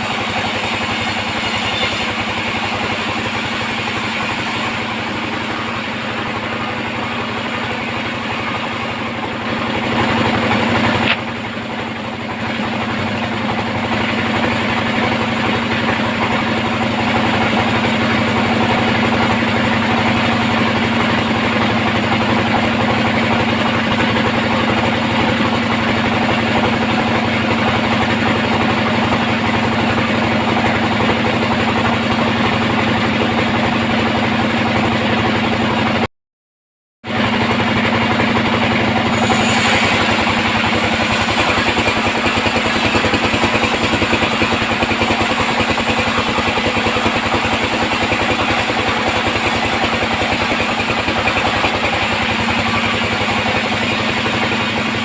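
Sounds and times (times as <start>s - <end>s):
band saw humming: 0.0s - 23.0s, 38.9s - 55.0s.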